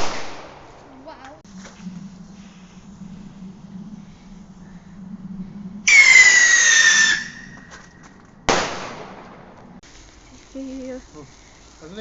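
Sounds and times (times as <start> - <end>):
firework whistle: 5.8 - 7.9
firework bang: 8.5 - 9.6.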